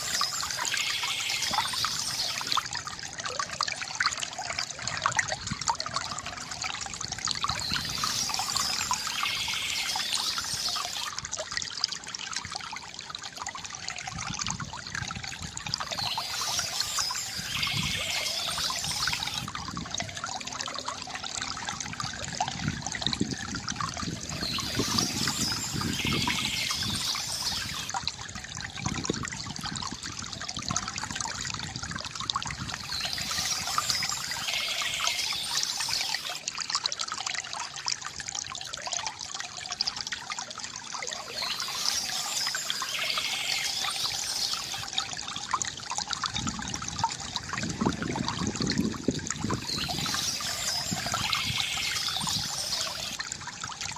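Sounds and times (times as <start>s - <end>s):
high bird chirping: 0.0s - 2.6s, 7.5s - 11.1s, 15.9s - 19.5s, 24.3s - 27.9s, 32.8s - 36.4s, 41.2s - 44.9s, 49.6s - 53.2s
fountain water trickling and gurgling: 0.0s - 53.9s.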